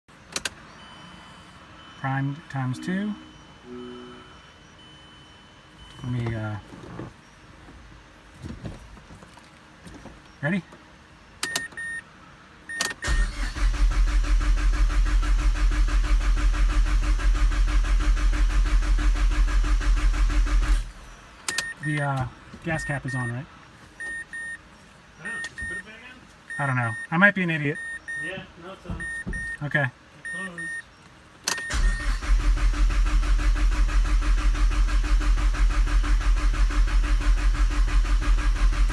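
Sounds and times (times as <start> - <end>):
short electronic beep: 0.8 - 6.7, 29.0 - 29.6
engine cranking by starter motor: 12.7 - 21.7, 31.4 - 38.9.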